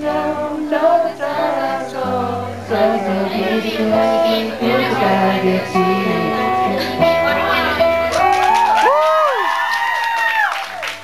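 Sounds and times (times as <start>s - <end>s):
person singing a slow ballad: 0.0s - 7.3s
instrumental backing: 0.0s - 9.1s.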